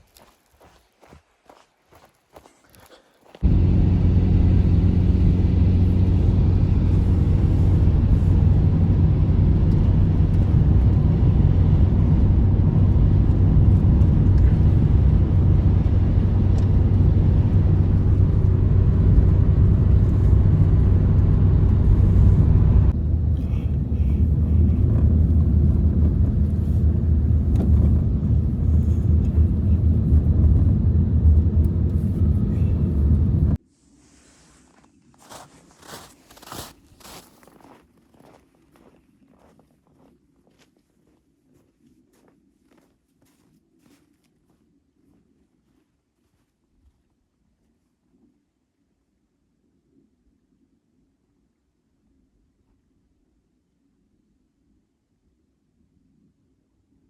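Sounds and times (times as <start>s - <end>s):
low droning rumble: 3.4s - 33.6s.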